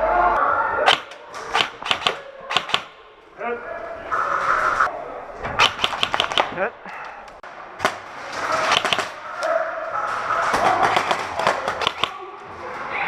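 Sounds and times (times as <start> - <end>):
steady background noise: 0.0 - 13.0
airsoft guns firing: 0.8 - 3.0, 5.6 - 6.6, 7.8 - 9.2, 10.5 - 12.2.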